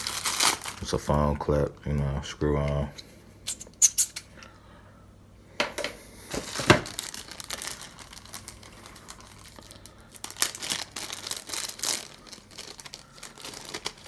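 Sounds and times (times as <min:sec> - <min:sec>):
packaging crinkling and rustling: 0:00.0 - 0:02.8, 0:06.3 - 0:14.0.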